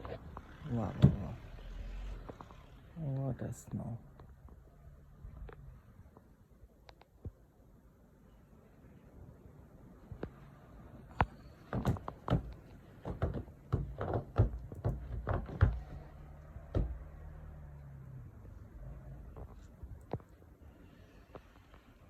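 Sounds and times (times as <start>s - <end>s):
irregular knocks and thumps: 11.1s - 17.4s.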